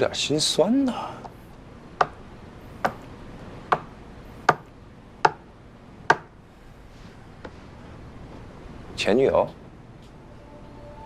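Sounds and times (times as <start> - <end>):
sharp knocks: 2.8 - 3.1, 3.7 - 5.5, 6.1 - 6.4.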